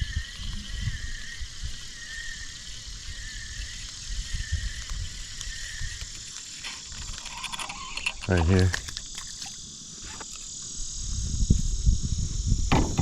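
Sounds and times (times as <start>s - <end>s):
frogs and insects chorus: 0.0s - 13.0s
wind buffeting microphone: 10.8s - 13.0s.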